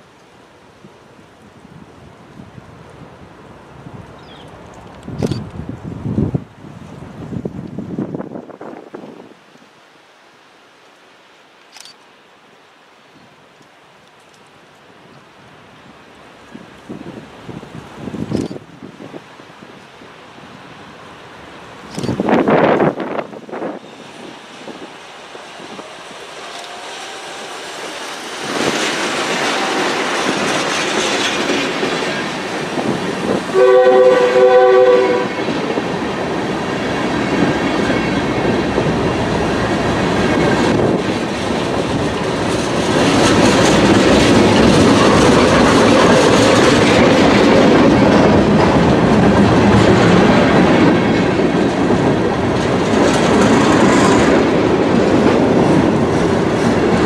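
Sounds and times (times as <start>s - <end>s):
train wheels clicking over rail joints: 24.0s - 33.4s, 36.5s - 57.0s
locomotive air horn: 33.5s - 35.4s.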